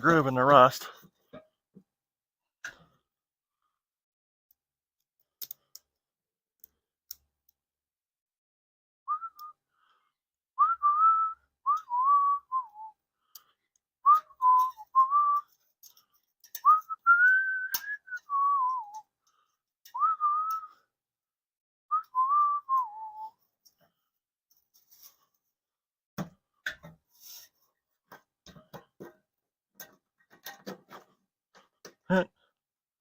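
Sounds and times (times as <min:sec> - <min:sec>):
person whistling a tune: 0:09.1 - 0:09.7, 0:10.6 - 0:13.0, 0:14.0 - 0:15.6, 0:16.6 - 0:19.1, 0:19.9 - 0:20.9, 0:21.9 - 0:23.5.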